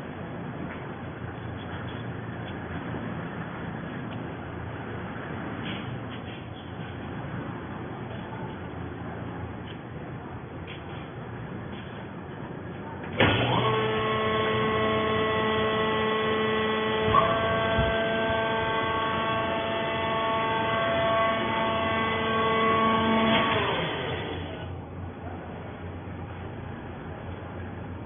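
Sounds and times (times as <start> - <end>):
hydraulic press motor whine and hum: 13.1 - 28.0.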